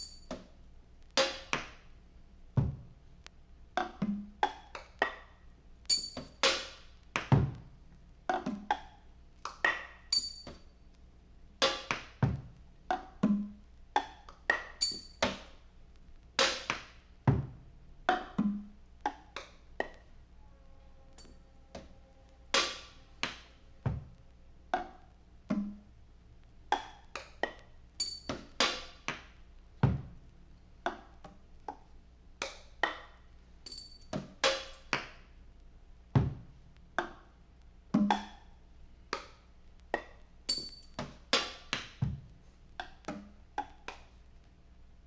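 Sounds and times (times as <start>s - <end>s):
low steady hum: 20.0s - 26.7s.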